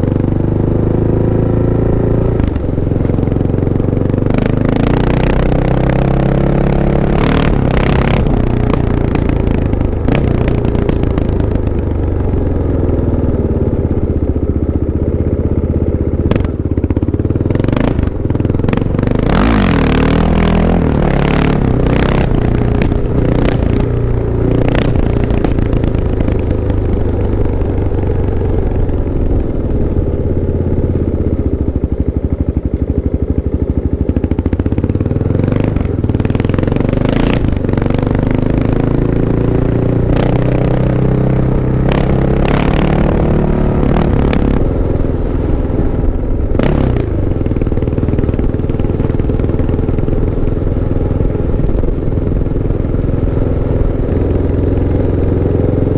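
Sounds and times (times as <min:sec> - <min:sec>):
motorcycle engine running: 0:00.0 - 0:55.9.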